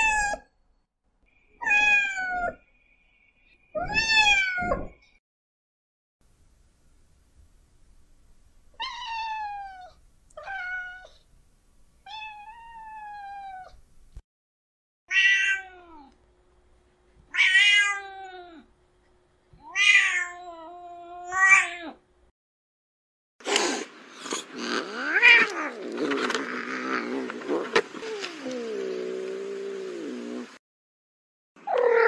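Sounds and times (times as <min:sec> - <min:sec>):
cat meowing: 0:01.6 - 0:02.6, 0:08.8 - 0:11.2, 0:12.1 - 0:13.8, 0:15.1 - 0:16.1, 0:17.3 - 0:18.6, 0:19.6 - 0:22.0.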